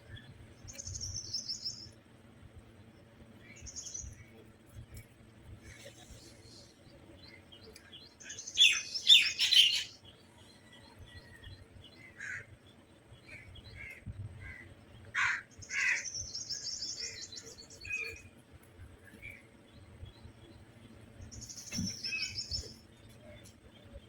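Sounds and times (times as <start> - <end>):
faint bird chirps: 5.6 - 12.4, 21.2 - 24.0
small bird trilling: 8.6 - 9.9
crows calling: 12.0 - 12.5, 13.8 - 16.2.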